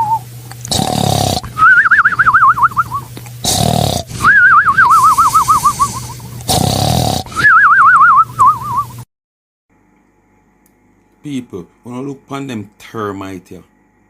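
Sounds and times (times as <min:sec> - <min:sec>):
dog whining: 0:04.1 - 0:06.5.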